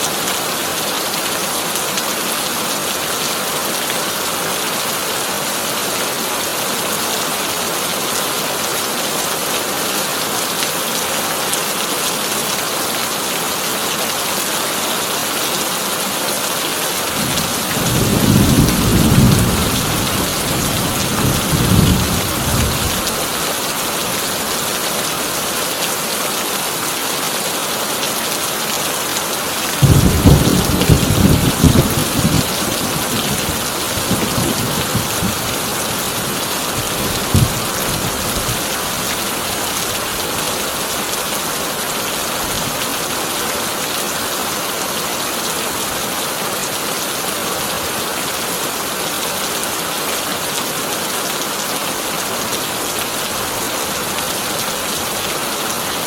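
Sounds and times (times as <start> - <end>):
heavy rain on a tin roof: 0.0 - 56.0
low rumble of thunder: 17.2 - 23.0, 29.8 - 35.6, 36.8 - 38.6.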